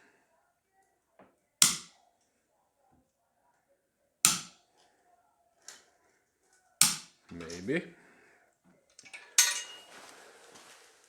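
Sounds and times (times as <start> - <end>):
hammer striking metal: 1.6 - 1.9, 4.3 - 4.6.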